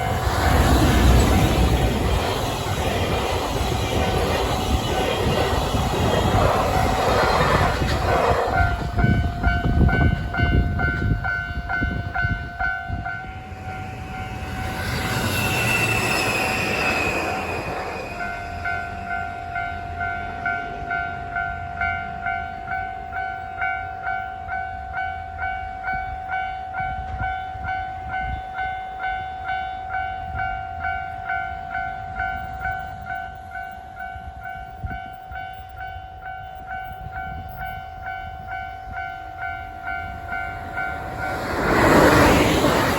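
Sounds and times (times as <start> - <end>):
train passing at speed: 0.0 - 42.9
level crossing warning bell: 8.6 - 42.9.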